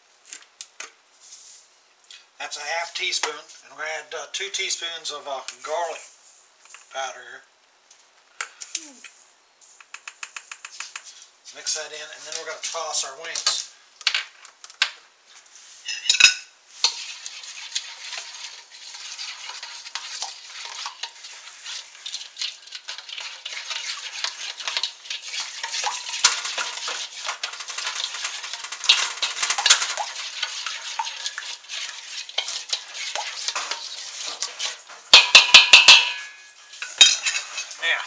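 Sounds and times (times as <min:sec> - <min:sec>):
utensil scraping a bowl: 0:16.7 - 0:38.0
utensil clatter: 0:16.8 - 0:38.0.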